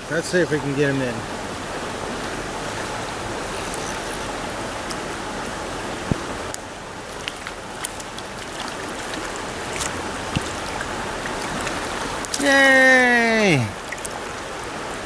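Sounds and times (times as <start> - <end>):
stream flowing: 0.0 - 15.0
short clicks and splashes: 7.2 - 14.8.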